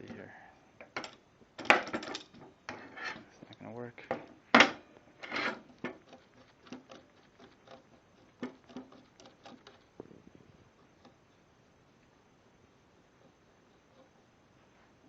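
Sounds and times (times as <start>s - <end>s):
clamp scraping: 1.9s - 3.4s, 5.2s - 9.8s.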